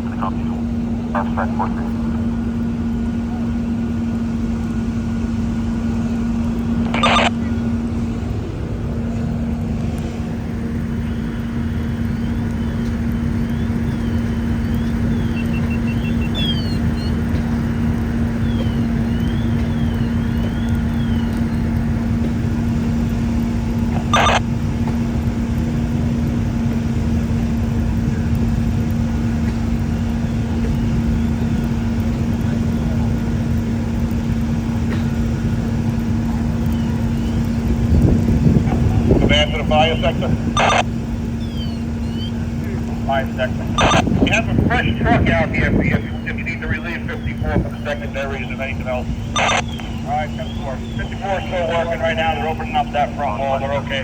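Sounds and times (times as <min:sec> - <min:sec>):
radio scanner hiss and hum: 0:00.0 - 0:04.9, 0:05.6 - 0:08.1, 0:09.0 - 0:24.6, 0:38.4 - 0:54.0.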